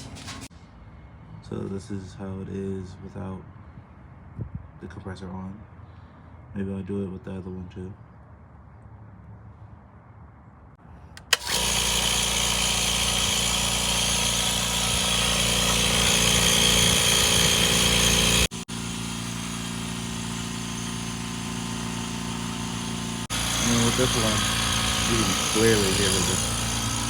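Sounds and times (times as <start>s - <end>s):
air compressor hum: 0.0s - 0.5s, 11.2s - 27.0s
blow gun click: 11.1s - 11.8s.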